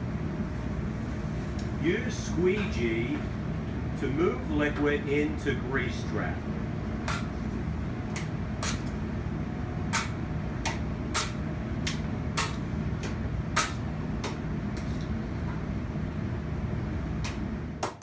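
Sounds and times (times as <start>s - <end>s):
low mechanical hum: 0.0s - 18.0s.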